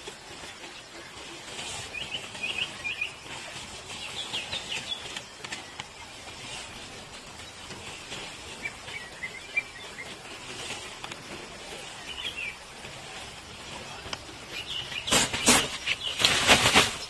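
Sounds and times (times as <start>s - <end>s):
small birds chirping faintly: 0.0s - 17.0s
steady outdoor hiss: 0.0s - 17.0s.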